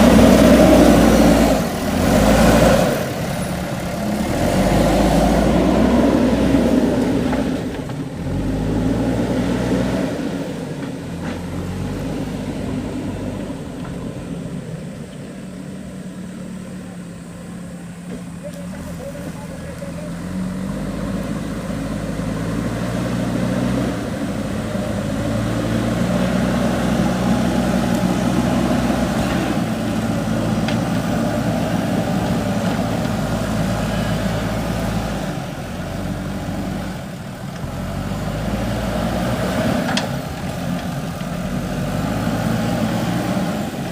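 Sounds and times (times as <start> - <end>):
diesel engine running: 0.0 - 43.9.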